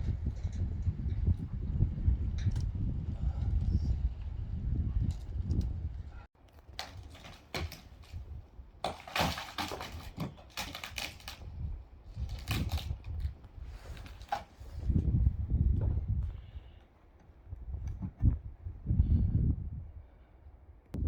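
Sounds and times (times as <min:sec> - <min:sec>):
wood cracking and crunching: 0:06.4 - 0:15.2.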